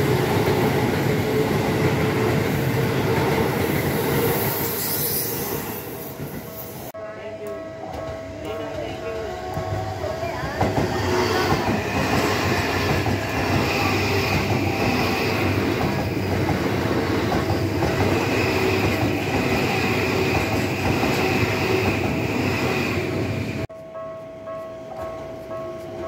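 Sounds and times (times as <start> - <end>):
train rumbling past: 0.0 - 7.0, 7.8 - 23.7
high wheel squeal: 4.3 - 6.9
crossing warning bell ringing: 6.4 - 15.5, 23.7 - 26.0.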